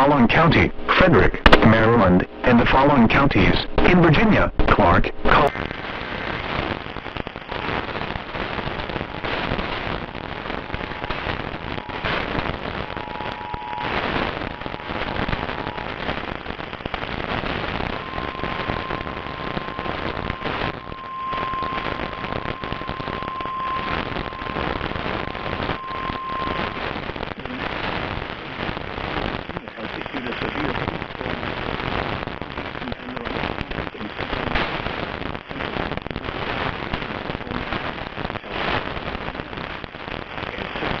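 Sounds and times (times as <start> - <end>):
crackling radio static: 0.0 - 41.0
faint steady whistle: 17.3 - 27.0.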